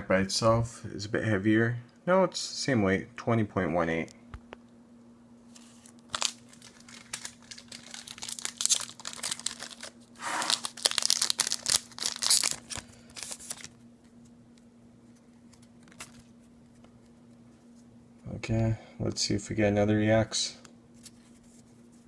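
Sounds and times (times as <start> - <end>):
foil wrapper tearing and crinkling: 5.6 - 13.8.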